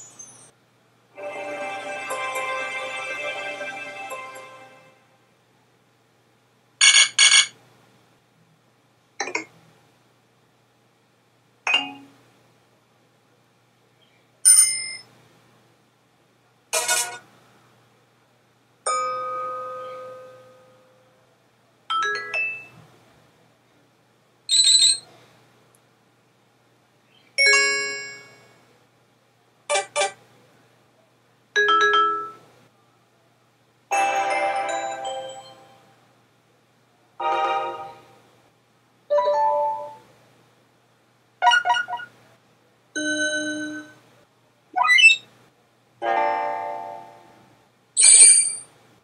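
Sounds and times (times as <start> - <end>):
electronic phone alert chimes: 6.8 - 7.5.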